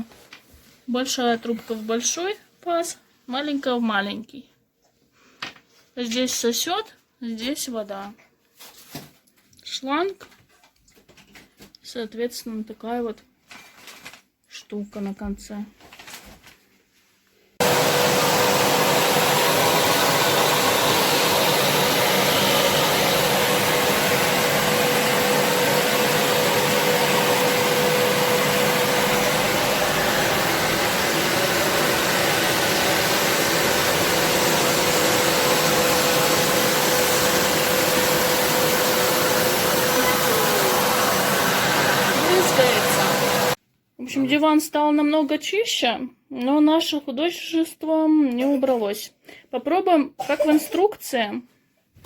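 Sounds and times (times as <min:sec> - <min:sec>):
vacuum cleaner running: 0:17.6 - 0:43.6.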